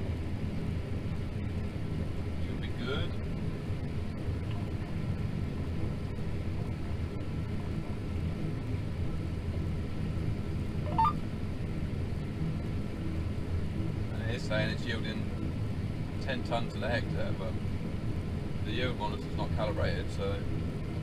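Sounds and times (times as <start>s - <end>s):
combine harvester low rumble: 0.0s - 21.0s
brief rising chirp: 10.9s - 11.2s.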